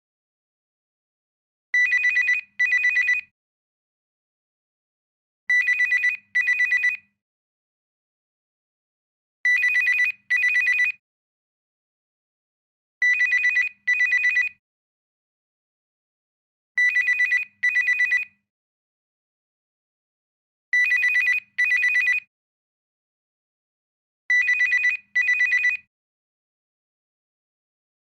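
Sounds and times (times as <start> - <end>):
cellphone ringtone two-tone trill: 1.8 - 3.3, 9.5 - 11.0, 20.8 - 22.3, 24.3 - 25.9.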